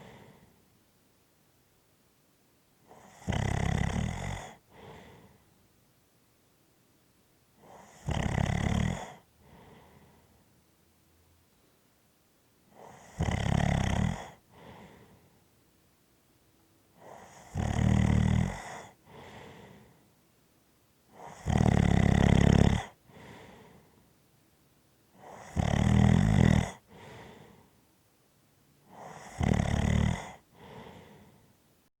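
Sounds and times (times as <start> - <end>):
soft breath: 0.0 - 0.8, 4.6 - 5.6, 9.0 - 10.6, 14.2 - 15.6, 18.5 - 20.2, 22.9 - 24.2, 26.8 - 27.9, 30.1 - 31.7
loud buzzing snores: 2.9 - 5.1, 7.6 - 9.8, 12.7 - 15.0, 17.0 - 19.8, 21.1 - 23.6, 25.2 - 27.5, 28.9 - 31.2.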